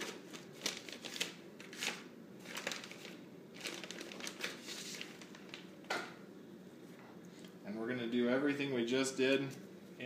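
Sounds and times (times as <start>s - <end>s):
plastic wrapper crinkling: 0.0s - 5.9s.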